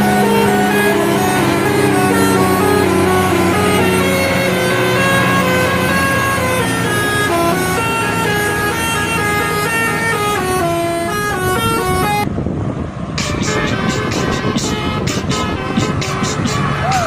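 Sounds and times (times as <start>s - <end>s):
musical bus horn playing a tune: 0.0s - 12.3s, 13.2s - 17.0s
low steady drone: 0.0s - 12.4s.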